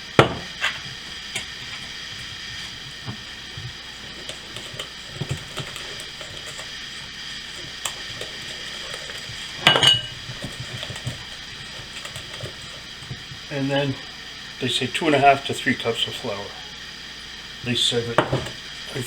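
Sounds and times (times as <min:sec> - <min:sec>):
utensil stirring batter: 0:00.0 - 0:19.0
metal clattering against bowl: 0:04.0 - 0:13.5.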